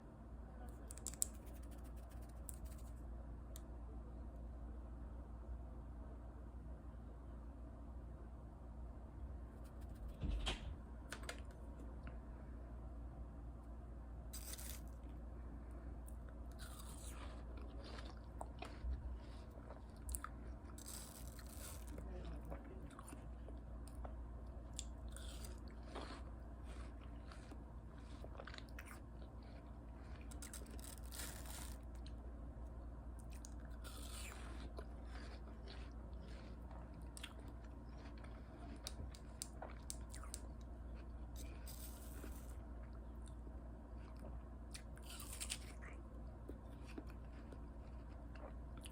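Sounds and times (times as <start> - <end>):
low hum: 0.0 - 48.9
chewing watermelon crunches: 0.8 - 3.0, 14.3 - 15.2, 16.1 - 32.2, 33.2 - 48.9.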